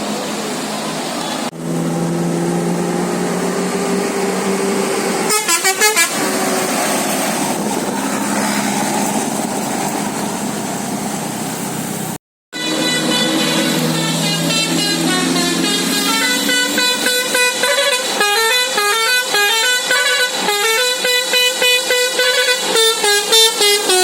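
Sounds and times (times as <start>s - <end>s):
road noise: 0.0s - 24.0s
bus air horn blasts: 5.1s - 6.8s, 12.5s - 24.0s.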